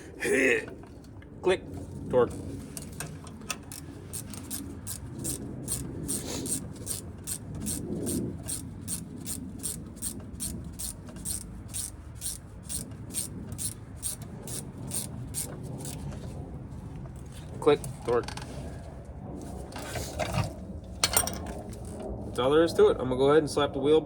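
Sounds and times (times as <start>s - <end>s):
ratchet wrench clicking: 3.5s - 16.1s.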